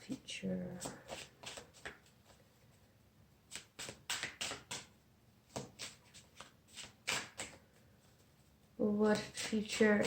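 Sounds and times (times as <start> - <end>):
cards being shuffled: 0.7 - 2.4, 3.5 - 4.9, 5.5 - 7.8.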